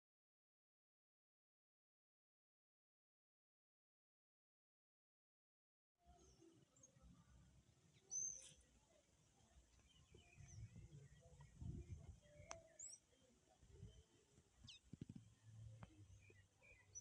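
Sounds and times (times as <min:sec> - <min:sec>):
high bird chirps: 0:09.8 - 0:15.1.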